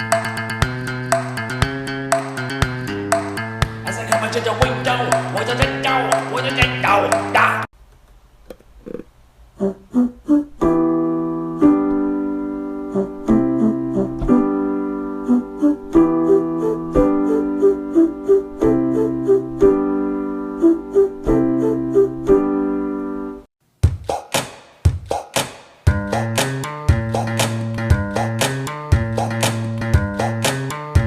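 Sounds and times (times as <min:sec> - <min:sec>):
crisp clicking beat: 0:03.1 - 0:07.7
electric piano music: 0:10.6 - 0:23.5.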